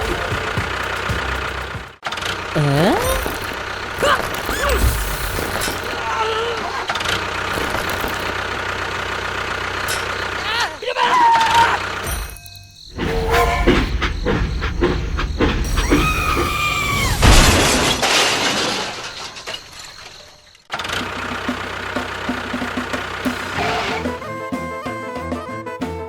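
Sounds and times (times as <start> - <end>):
loud crash with shattering: 15.6 - 20.7.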